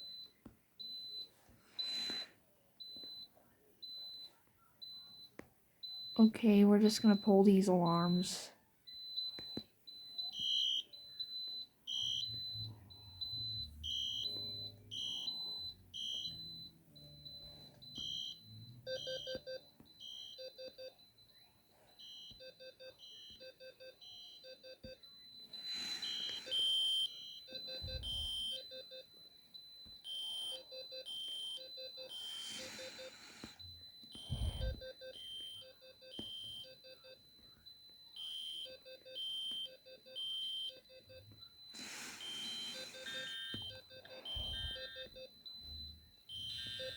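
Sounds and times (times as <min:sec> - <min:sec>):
steady high-pitched alarm tone: 0:03.9 - 0:46.9
lower pulsing alarm tone: 0:06.0 - 0:08.4, 0:10.0 - 0:21.3, 0:22.0 - 0:29.0, 0:29.6 - 0:46.9
electronic horns beeping: 0:11.9 - 0:21.0, 0:38.2 - 0:46.9.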